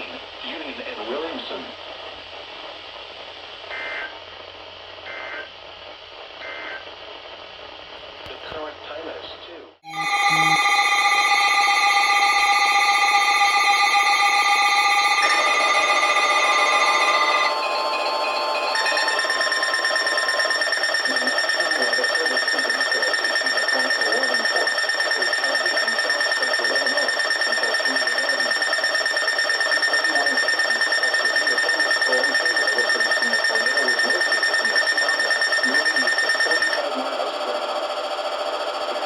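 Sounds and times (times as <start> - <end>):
low warning tone: 9.8 - 36.9
high-pitched alarm tone: 9.8 - 37.2.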